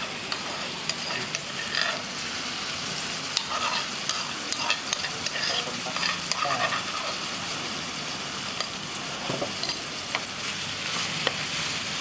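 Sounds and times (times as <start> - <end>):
utensil scraping a pan: 0.0 - 2.2, 3.4 - 7.2
meat sizzling in oil: 0.0 - 12.0.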